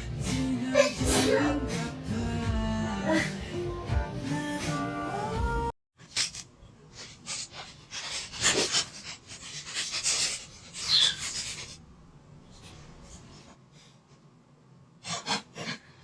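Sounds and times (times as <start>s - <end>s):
person sniffing and gasping: 0.3s - 1.6s.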